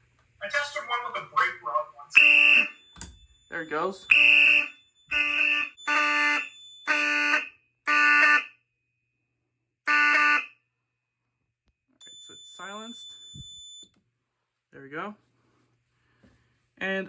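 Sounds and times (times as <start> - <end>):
pulsing buzzy fire alarm tone: 2.1 - 8.6, 9.9 - 10.5, 12.0 - 13.9.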